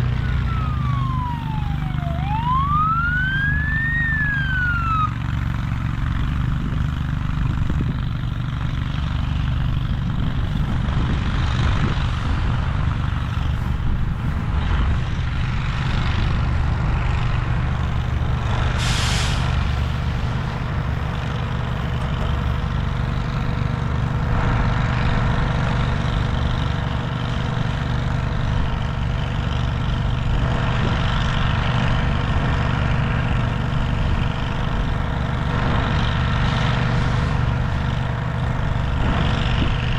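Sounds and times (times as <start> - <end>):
heavy vehicle engine running: 0.0 - 39.9
air brake hiss: 18.7 - 19.8.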